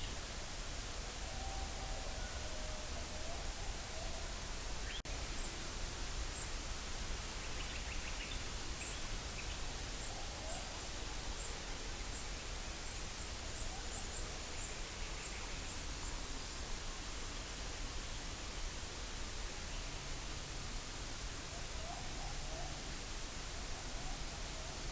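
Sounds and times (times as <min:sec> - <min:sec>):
steady hiss: 0:00.0 - 0:24.9.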